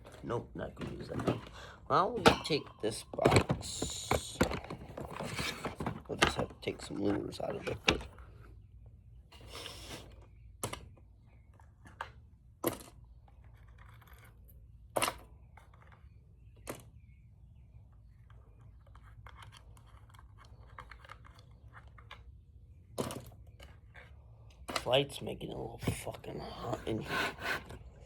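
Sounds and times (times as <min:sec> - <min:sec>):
hard objects clicking and knocking: 0:00.0 - 0:08.5, 0:18.0 - 0:25.0
soft rustling and rattling: 0:00.0 - 0:28.0.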